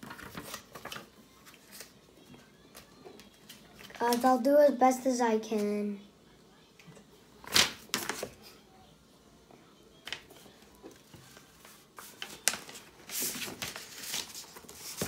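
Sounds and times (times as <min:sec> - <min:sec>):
paper and packaging rustling: 0:00.0 - 0:04.5, 0:07.4 - 0:08.6, 0:10.0 - 0:15.0.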